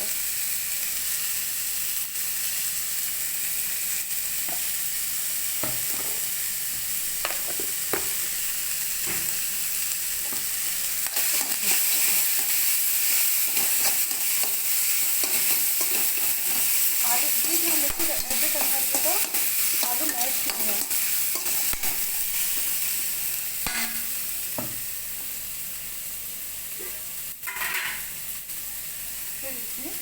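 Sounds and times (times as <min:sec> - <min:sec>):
vegetables sizzling in hot oil: 0:00.0 - 0:30.0
spatula knocking and scraping pan: 0:23.7 - 0:24.9.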